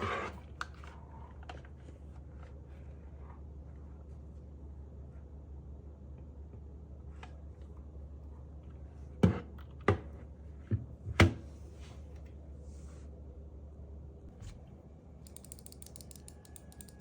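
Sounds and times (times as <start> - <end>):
low electrical hum: 0.0 - 17.0.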